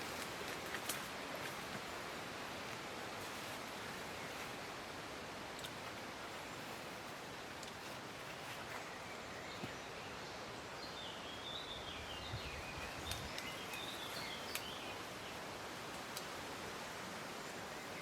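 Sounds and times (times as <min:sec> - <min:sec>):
wind in a forest: 0:00.0 - 0:18.0
faint clicks: 0:05.5 - 0:06.4, 0:13.0 - 0:14.8, 0:15.8 - 0:16.4.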